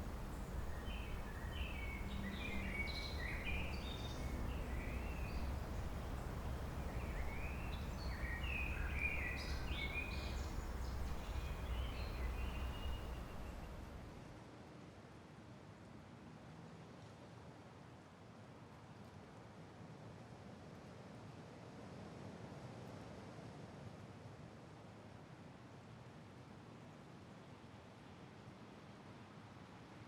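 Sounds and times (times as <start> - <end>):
birds chirping: 0.0 - 14.2
low background rumble: 0.0 - 14.3.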